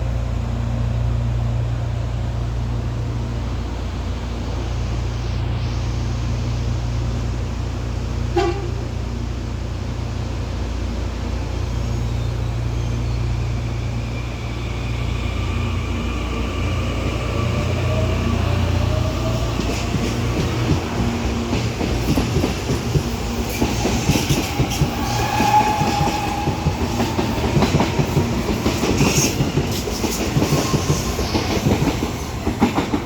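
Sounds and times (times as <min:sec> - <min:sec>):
train low rumble: 0:00.0 - 0:33.0
train horn toot: 0:08.3 - 0:09.1, 0:23.9 - 0:27.4.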